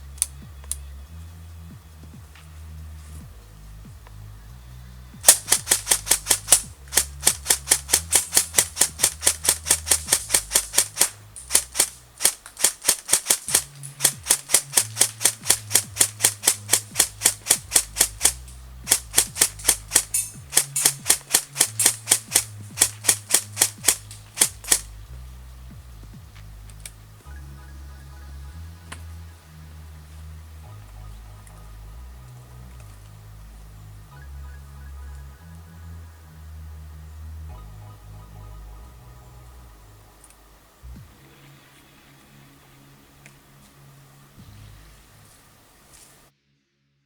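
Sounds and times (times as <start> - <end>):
music: 0.0 - 47.0
airsoft gun firing full-auto bursts: 5.2 - 25.0.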